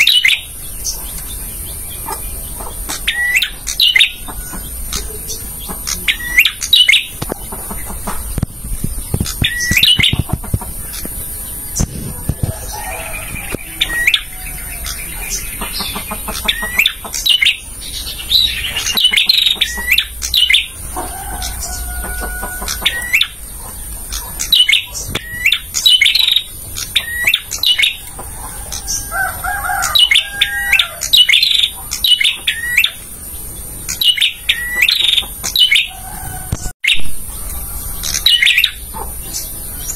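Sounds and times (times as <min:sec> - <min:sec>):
bird chirping: 0:00.0 - 0:39.9.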